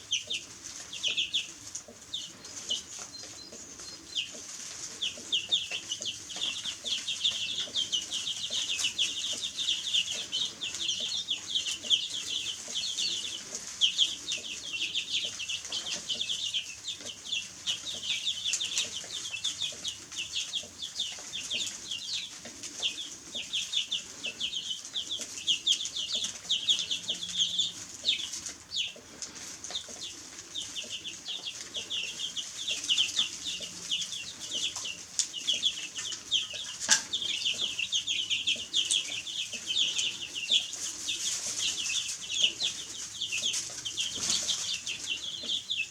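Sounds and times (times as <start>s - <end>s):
baby chicks peeping: 0.0s - 45.9s.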